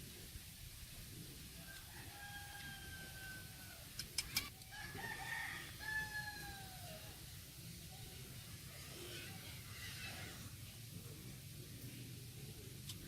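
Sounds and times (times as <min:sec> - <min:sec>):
rooster crowing: 0:01.6 - 0:03.9, 0:04.6 - 0:07.3.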